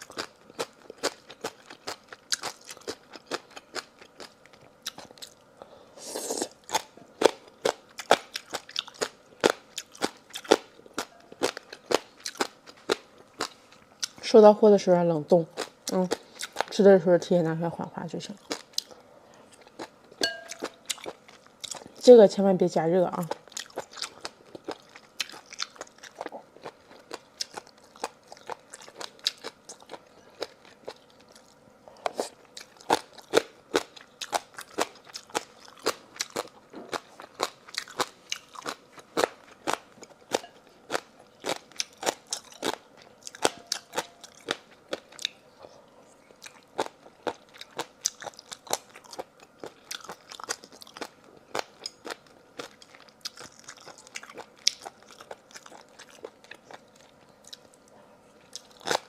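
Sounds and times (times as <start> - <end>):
person chewing crunchy food: 0.0 - 14.2, 15.5 - 16.7, 18.4 - 22.0, 23.2 - 59.0.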